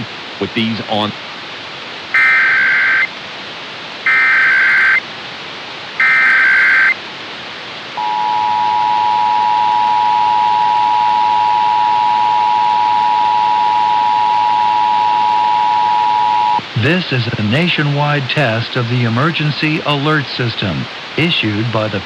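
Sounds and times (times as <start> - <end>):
harsh buzzing data bursts: 2.1 - 3.1, 4.0 - 5.0, 6.0 - 7.0
two-tone attention signal: 8.0 - 16.6.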